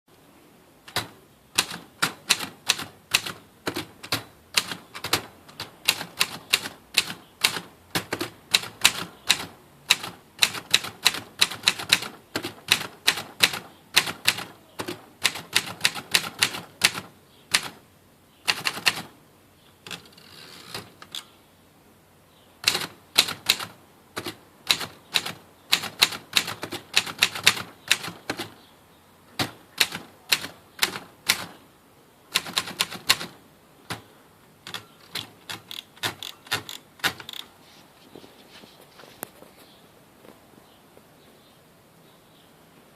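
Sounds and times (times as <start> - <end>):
manual typewriter keystrokes: 0.9 - 17.8, 18.5 - 19.1, 22.6 - 28.6, 29.4 - 31.6, 32.3 - 37.5.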